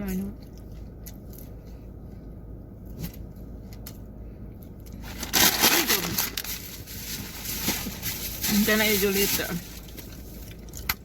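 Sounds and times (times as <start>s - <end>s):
crinkling rustling handling noise: 4.9s - 10.9s.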